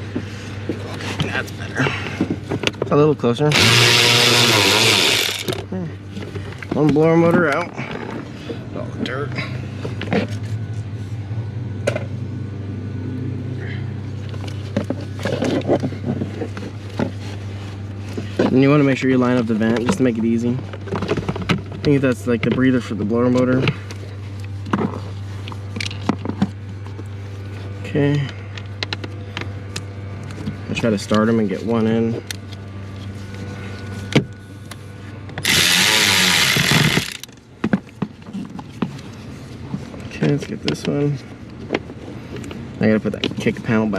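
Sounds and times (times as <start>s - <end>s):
steady low hum: 0.0s - 43.9s
power driver driving screw: 3.5s - 5.6s, 35.4s - 37.3s.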